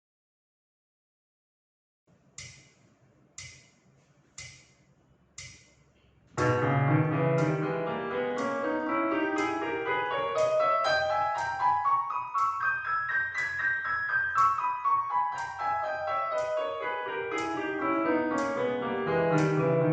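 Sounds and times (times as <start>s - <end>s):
sharp clicks: 2.4s - 2.8s, 3.4s - 4.8s, 5.4s - 5.8s, 6.4s - 14.7s, 15.3s - 19.9s
piano music: 6.4s - 19.9s.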